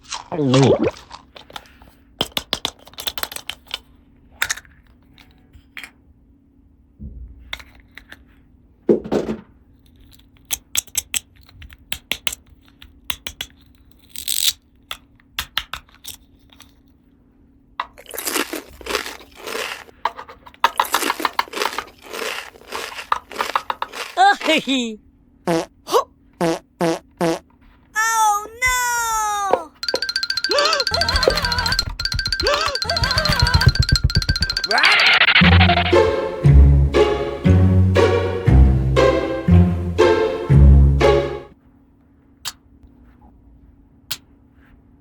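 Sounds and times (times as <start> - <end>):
plastic toy pieces clicking: 2.2 - 4.8, 10.0 - 16.8, 20.1 - 21.9, 29.8 - 35.4.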